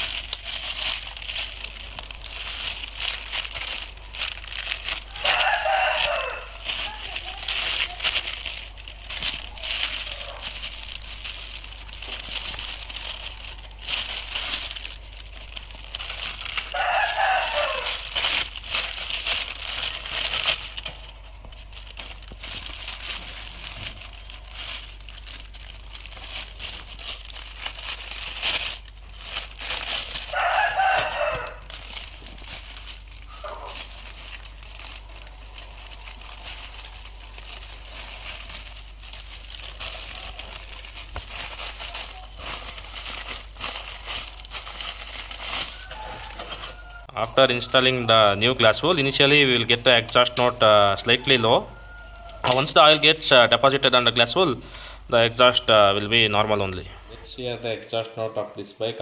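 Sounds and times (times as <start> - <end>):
insulation wool rustling and crinkling: 0.0 - 58.6
rooster crowing: 4.9 - 8.8, 16.3 - 20.0, 29.8 - 32.2, 44.2 - 48.4, 50.4 - 53.0.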